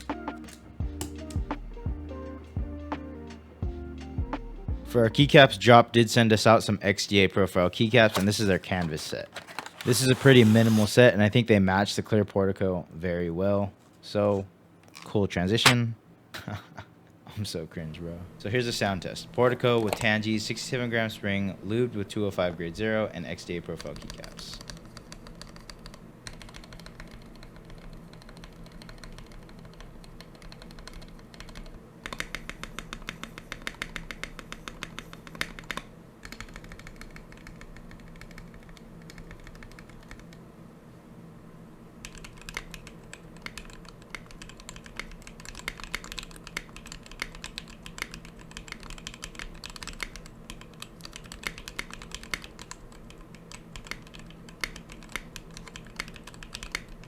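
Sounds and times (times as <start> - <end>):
mechanical keyboard typing: 23.8 - 40.4, 42.0 - 57.0.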